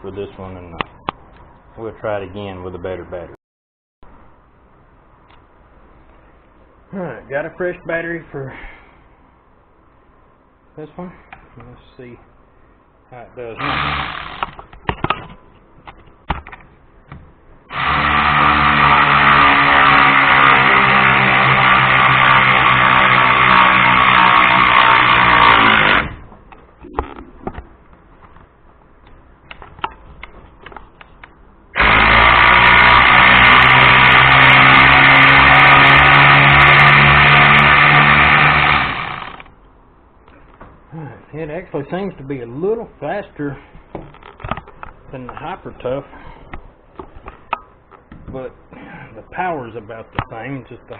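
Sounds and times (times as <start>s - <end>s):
electric ratchet motor whine: 13.6s - 14.6s, 31.8s - 39.5s.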